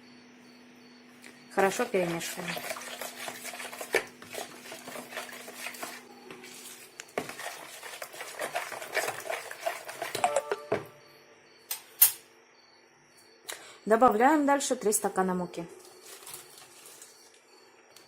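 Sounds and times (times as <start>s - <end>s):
utensil stirring in a bowl: 1.6s - 10.5s.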